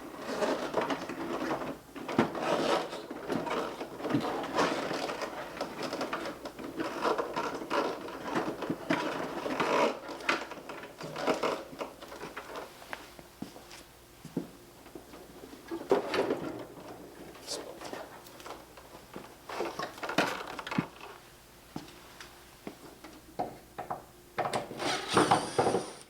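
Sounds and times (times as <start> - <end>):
plastic parts and wiring rattling: 0.4 - 12.6, 19.5 - 21.2.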